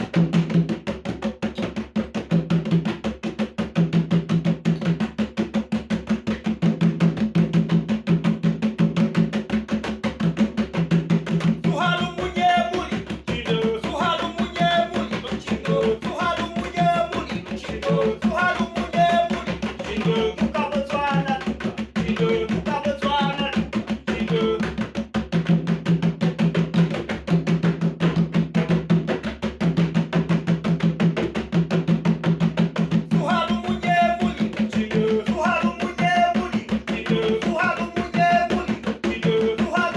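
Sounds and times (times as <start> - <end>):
fast drum beat music: 0.0 - 39.9
person singing: 11.6 - 24.7, 33.1 - 39.9.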